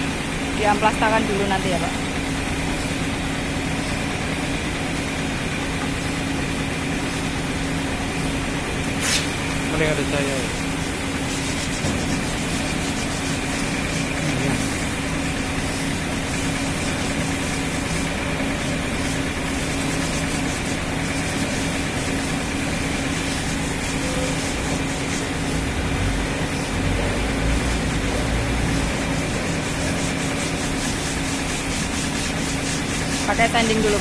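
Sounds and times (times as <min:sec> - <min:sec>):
motor humming: 0:13.4 - 0:19.0.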